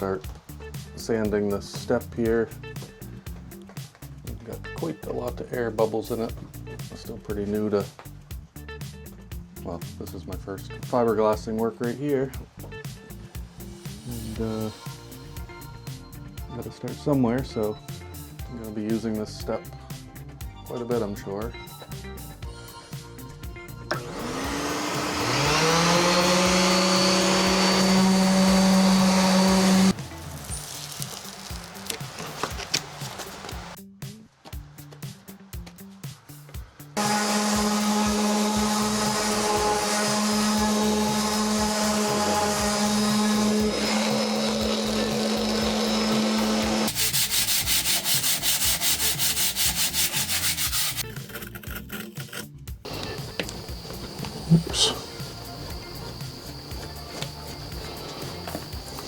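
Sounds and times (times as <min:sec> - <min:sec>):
motor hum: 0:23.9 - 0:30.0, 0:37.0 - 0:46.9
power sander whining: 0:23.9 - 0:30.7, 0:37.0 - 0:51.0, 0:52.9 - 0:59.0.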